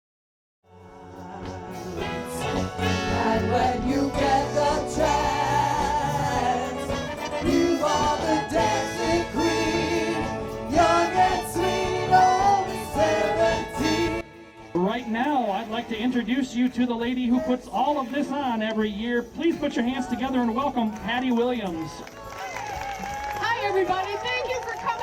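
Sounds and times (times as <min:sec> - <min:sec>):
song with singing and band: 0:00.8 - 0:14.8.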